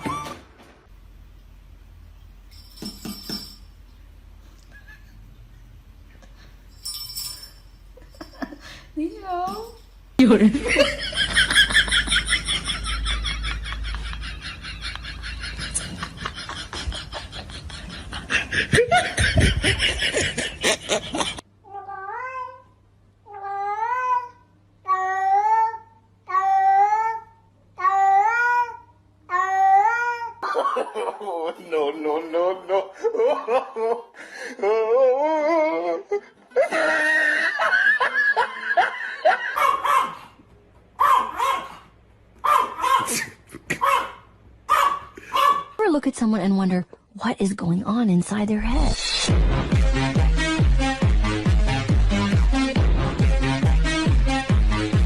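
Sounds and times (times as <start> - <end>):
person laughing: 4.6 - 5.2, 10.2 - 21.4, 30.4 - 39.6, 43.0 - 44.0
dog barking: 39.6 - 40.4, 41.0 - 43.2, 43.8 - 45.8.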